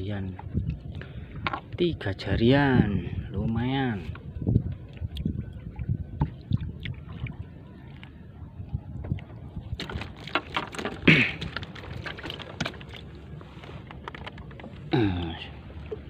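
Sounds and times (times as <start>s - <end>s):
wind rumbling on microphone: 0.0s - 16.0s
water lapping and splashing: 4.0s - 16.0s.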